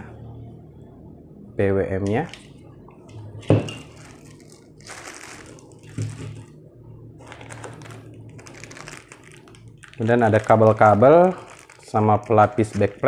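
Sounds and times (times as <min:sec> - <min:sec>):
plastic bags crinkling: 0:03.5 - 0:06.6, 0:07.2 - 0:13.0.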